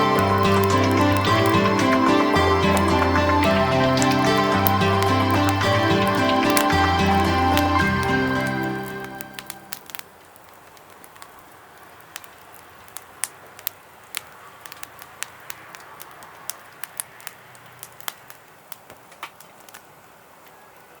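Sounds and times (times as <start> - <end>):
fire hissing: 0.0 - 10.1
fire crackling and popping: 0.0 - 20.6.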